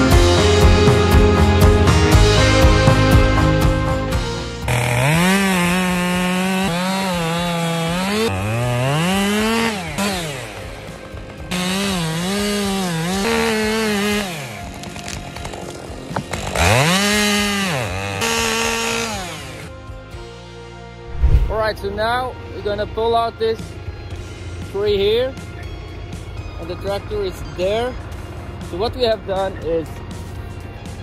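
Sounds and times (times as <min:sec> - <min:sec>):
chainsaw revving and cutting: 0:00.0 - 0:19.8.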